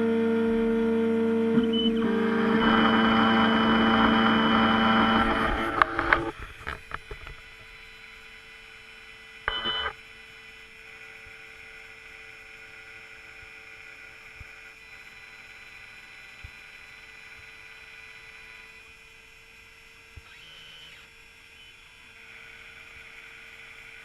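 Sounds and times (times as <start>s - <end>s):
whirring beep: 1.4s - 6.3s, 9.3s - 11.1s, 13.7s - 24.0s.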